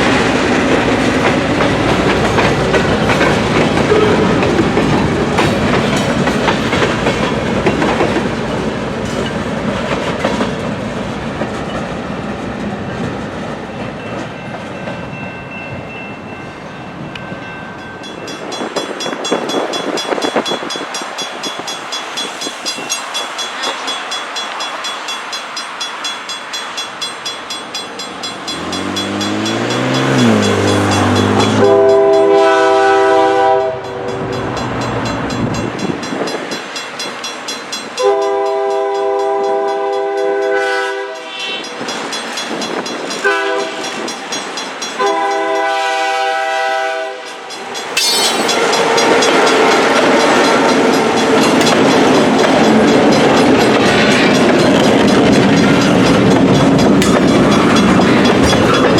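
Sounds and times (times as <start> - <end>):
train wheel and rail noise: 0.0 - 58.9
diesel engine low drone: 28.4 - 32.2
locomotive air horn: 30.2 - 34.3, 38.0 - 41.6, 43.2 - 44.0, 45.0 - 47.3.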